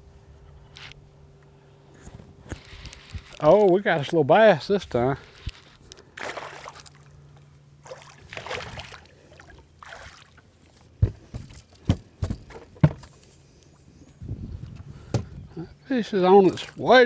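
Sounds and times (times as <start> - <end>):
water splashing around boat: 5.4 - 7.2, 7.8 - 11.6, 16.3 - 17.0.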